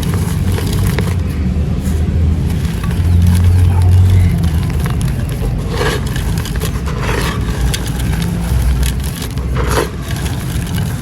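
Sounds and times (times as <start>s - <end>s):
sand-cement chunks crumbling: 0.0s - 1.3s, 1.9s - 11.0s.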